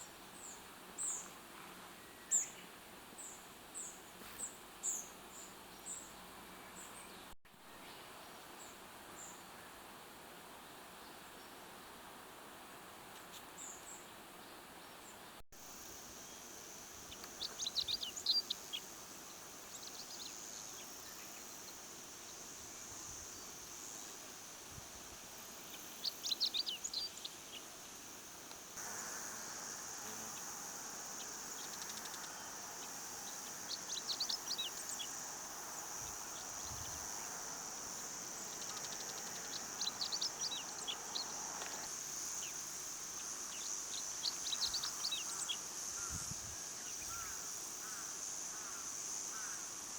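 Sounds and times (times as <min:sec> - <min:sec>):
songbird singing: 0:00.0 - 0:09.8, 0:16.2 - 0:24.3, 0:25.5 - 0:49.7
high-pitched insect drone: 0:28.8 - 0:49.9.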